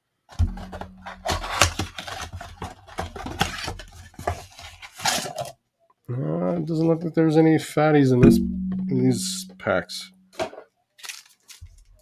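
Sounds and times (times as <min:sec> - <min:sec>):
cardboard box opening: 0:00.5 - 0:05.5
card packs rustling: 0:00.5 - 0:05.6, 0:11.0 - 0:11.9.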